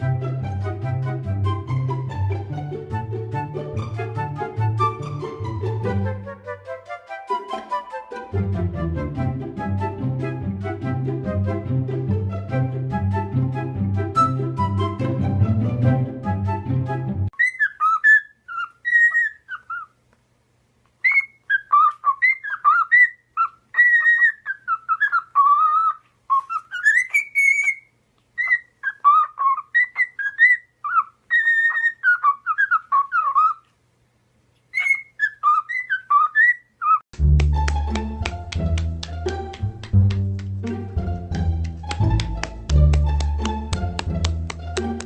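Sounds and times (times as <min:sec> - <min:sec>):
background music: 0:00.0 - 0:17.3, 0:37.2 - 0:45.0
parrot whistling a tune: 0:14.2 - 0:15.0, 0:17.3 - 0:19.9, 0:21.0 - 0:33.6, 0:34.7 - 0:37.0.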